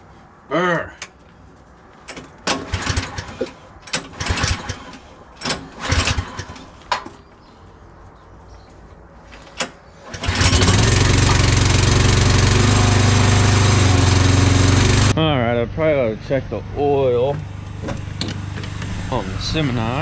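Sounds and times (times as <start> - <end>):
engine starting and running: 2.1 - 7.2, 9.4 - 15.2, 17.2 - 20.0.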